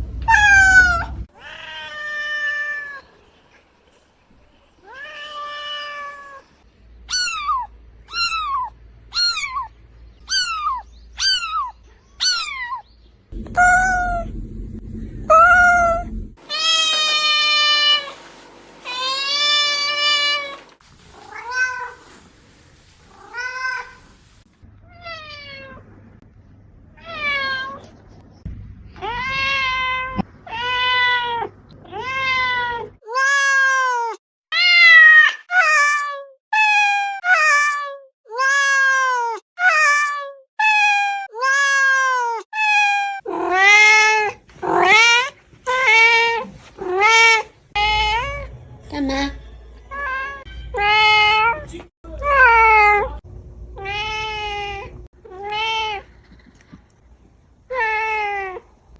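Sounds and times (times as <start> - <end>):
cats meowing: 0.3 - 3.0, 7.1 - 12.8, 13.4 - 14.4, 15.2 - 18.1, 49.9 - 53.2, 53.8 - 56.2.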